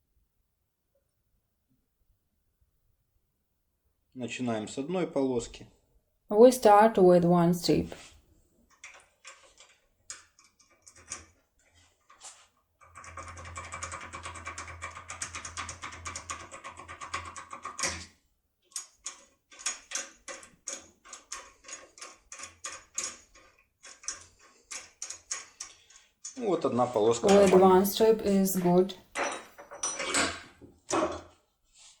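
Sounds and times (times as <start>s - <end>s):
lockpick rattling in lock: 18.7s - 26.4s.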